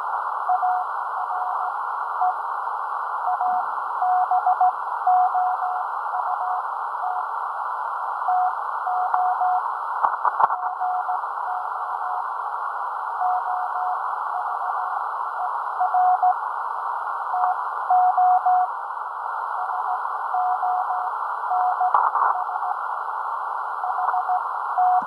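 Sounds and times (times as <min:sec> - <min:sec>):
receiver hiss: 0:00.0 - 0:25.0
radio crackle: 0:09.0 - 0:12.3, 0:19.5 - 0:22.9, 0:23.7 - 0:25.0
morse code tone: 0:19.6 - 0:22.7, 0:23.9 - 0:25.0.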